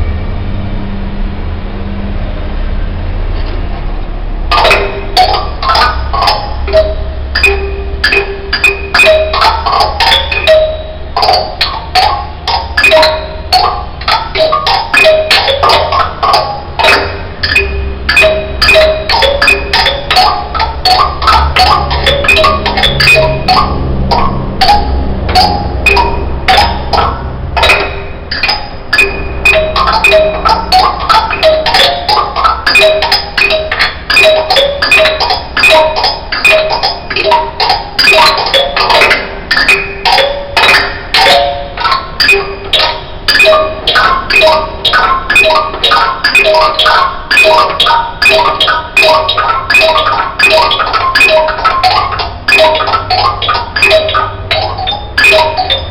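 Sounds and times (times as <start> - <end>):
mallet-like instrumental music: 4.5 - 55.9
sharp percussive clicks: 4.5 - 55.9
low bass: 16.1 - 31.7.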